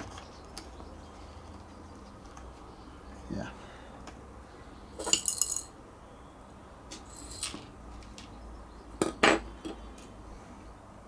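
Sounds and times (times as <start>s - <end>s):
small hard parts clinking: 5.0s - 5.8s, 6.9s - 7.7s.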